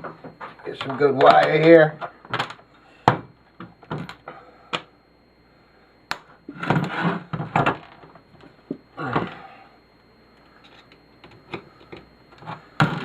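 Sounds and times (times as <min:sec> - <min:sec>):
parts scraping and rattling: 0:06.5 - 0:08.2.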